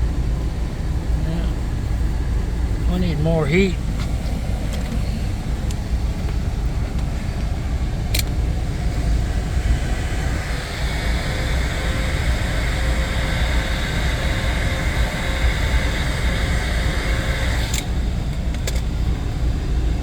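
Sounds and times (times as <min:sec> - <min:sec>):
faint steady whine: 0:00.0 - 0:20.0.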